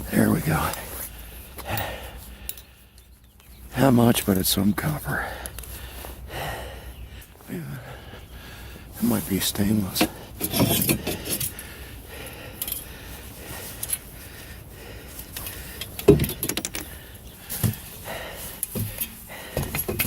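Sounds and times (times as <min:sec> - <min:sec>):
scrap metal clinking and rattling: 0:10.0 - 0:11.6, 0:12.6 - 0:12.9, 0:15.1 - 0:20.0.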